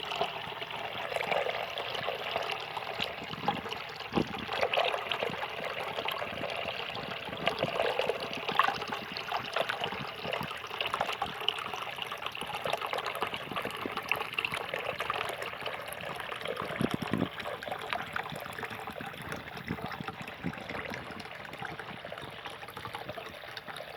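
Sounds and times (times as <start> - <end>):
fountain water splashing: 0.0 - 23.9.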